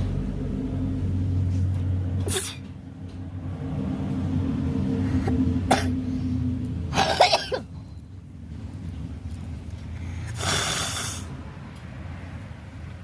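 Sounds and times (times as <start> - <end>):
steady low hum: 0.0 - 13.0
person sneezing: 2.3 - 2.7.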